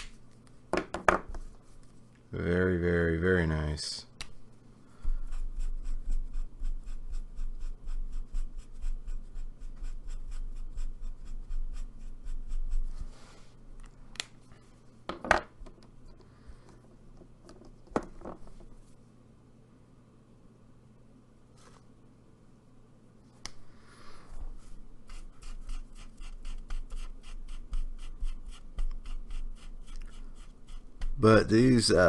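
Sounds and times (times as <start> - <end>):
marker scrubbing on paper: 5.0 - 13.4, 24.6 - 31.2.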